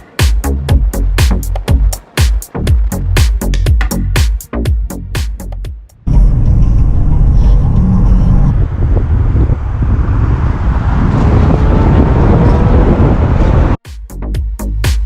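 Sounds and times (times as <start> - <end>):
wind buffeting on microphone: 6.0 - 13.8.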